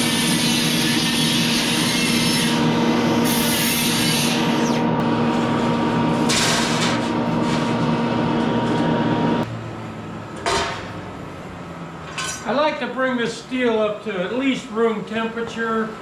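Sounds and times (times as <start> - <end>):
electric grinder grinding steel: 0.0 - 9.4.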